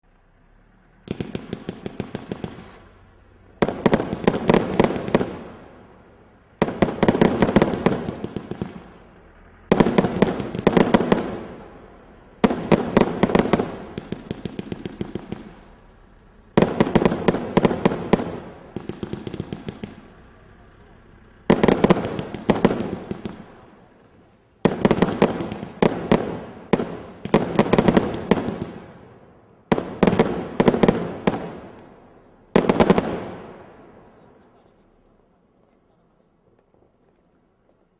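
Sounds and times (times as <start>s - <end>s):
firework volleys of sharp bangs: 0.0s - 37.9s.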